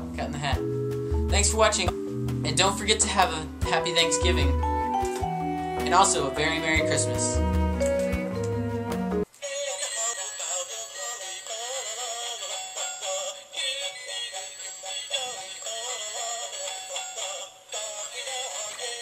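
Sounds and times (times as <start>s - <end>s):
tinny music backing: 0.0s - 9.2s.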